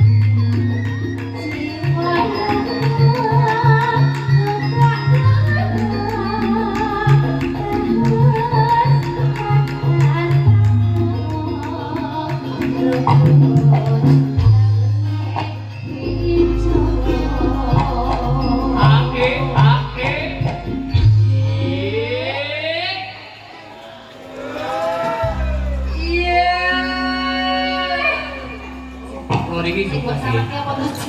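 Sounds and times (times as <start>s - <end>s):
steady percussion beat: 0.0s - 22.3s
sustained bass notes: 0.0s - 22.8s
melodic vocal line: 0.0s - 23.9s, 24.6s - 31.0s.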